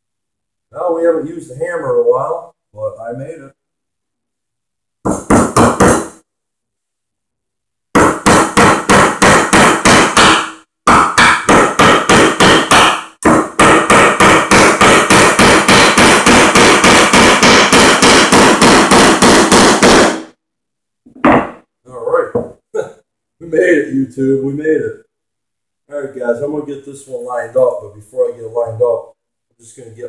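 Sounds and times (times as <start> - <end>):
hammer driving nails into wood: 5.1 - 6.2, 8.0 - 20.3.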